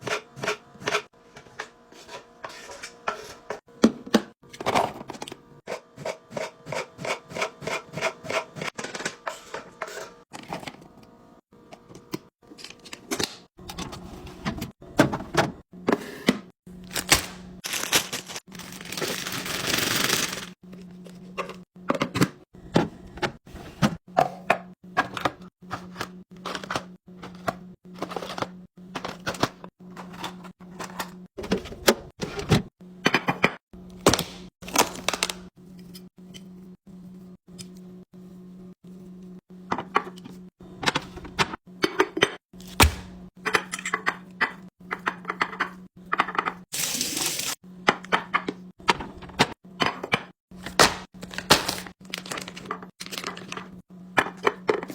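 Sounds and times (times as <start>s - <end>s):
packaging rustling: 16.9s - 20.6s, 46.8s - 47.6s, 51.2s - 53.5s.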